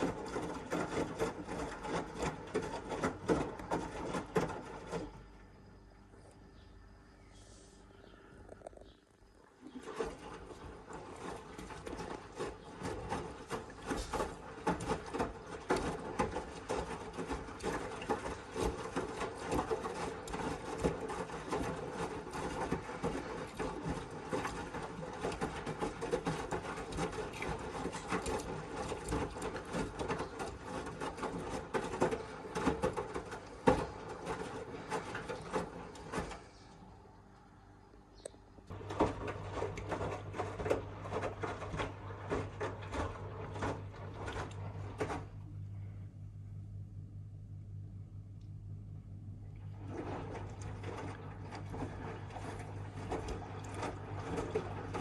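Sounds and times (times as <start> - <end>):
drum clicking and rubbing: 0.0 - 5.1, 9.9 - 36.5
washing machine running: 0.0 - 7.2, 7.9 - 55.0.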